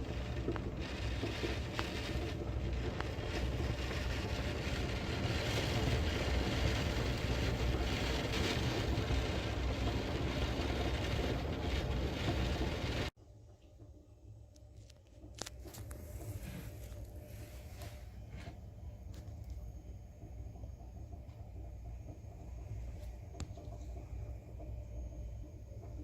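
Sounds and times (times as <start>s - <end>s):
heavy rain: 0.0s - 13.1s
wind rumbling on microphone: 0.0s - 13.1s.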